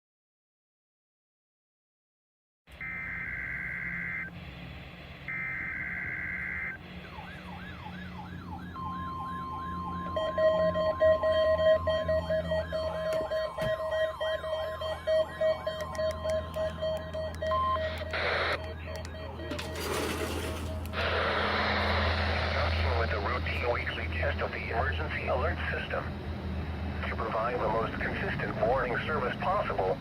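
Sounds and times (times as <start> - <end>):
steady warning alarm tone: 2.8 - 22.0
siren-like sweeping alarm: 2.8 - 23.4
pulsing beep: 10.0 - 21.0.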